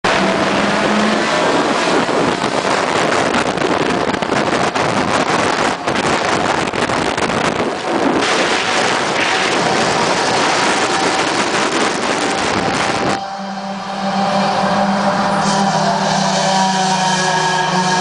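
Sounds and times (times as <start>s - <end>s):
car engine and exhaust running: 0.0s - 16.8s
wind noise on microphone: 0.1s - 13.4s.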